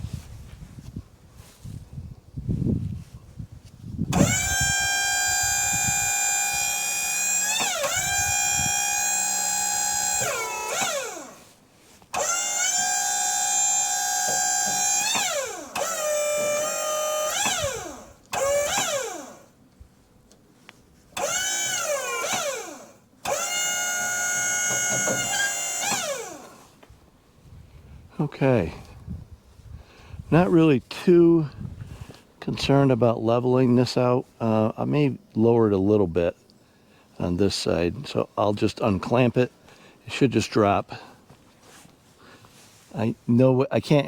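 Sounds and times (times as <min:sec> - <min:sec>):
sawmill hydraulics whining: 0:04.1 - 0:19.5, 0:21.2 - 0:26.8.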